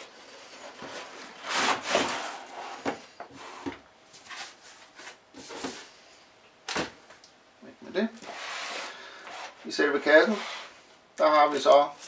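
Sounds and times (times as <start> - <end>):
cardboard scraping against cardboard: 0.0 - 5.9, 8.2 - 10.8.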